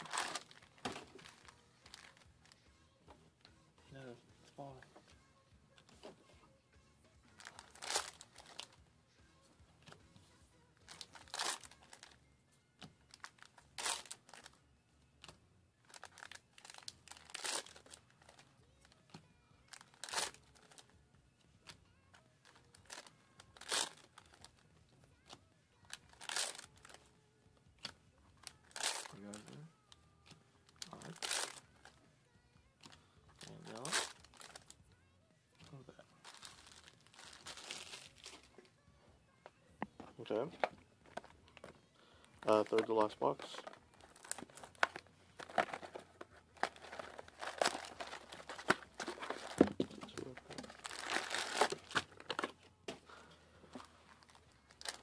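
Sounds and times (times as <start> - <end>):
foil wrapper crinkling: 0.0 - 2.6, 7.3 - 8.8, 10.9 - 12.2, 15.9 - 18.9, 19.6 - 20.9, 22.5 - 24.6, 25.2 - 27.0, 28.4 - 29.7, 30.8 - 31.9, 32.8 - 34.8, 35.6 - 38.5, 42.4 - 52.5, 53.1 - 55.0
foil wrapper ripping: 15.9 - 18.4, 19.7 - 20.8, 22.8 - 24.1, 25.9 - 27.0, 28.5 - 29.6, 30.8 - 31.6, 42.5 - 52.5.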